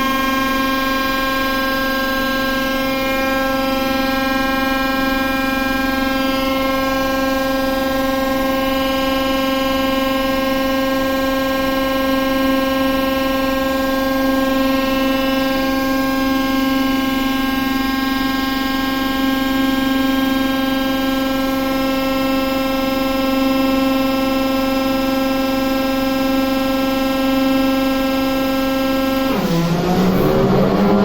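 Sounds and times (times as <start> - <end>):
locomotive machinery whine: 28.8 - 31.0.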